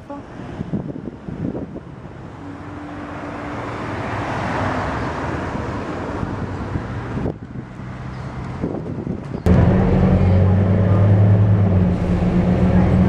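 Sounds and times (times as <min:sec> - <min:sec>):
low traffic hum: 0:00.0 - 0:13.0
motor vehicle passing: 0:09.4 - 0:13.0.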